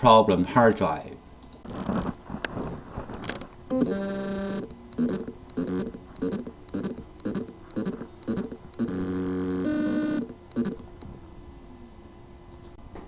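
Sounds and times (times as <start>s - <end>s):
hard drive motor buzzing: 3.1s - 11.2s.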